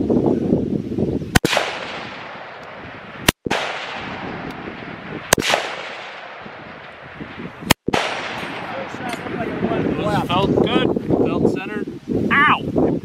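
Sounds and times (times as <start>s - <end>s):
rifle shots with echo: 1.4s - 9.8s.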